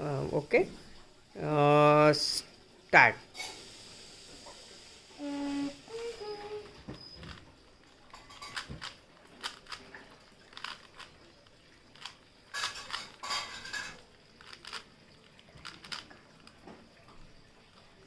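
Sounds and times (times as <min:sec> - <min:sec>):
puzzle cube clicking: 0:08.6 - 0:09.8, 0:10.5 - 0:11.1, 0:14.4 - 0:14.9, 0:15.6 - 0:16.1.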